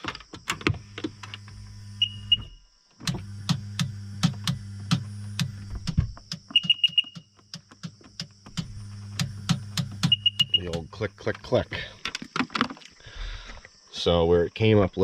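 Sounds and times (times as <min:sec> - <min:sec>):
low electrical hum: 0:00.0 - 0:15.0
starter solenoid clicking: 0:03.0 - 0:11.4
short high beeps: 0:10.1 - 0:10.7.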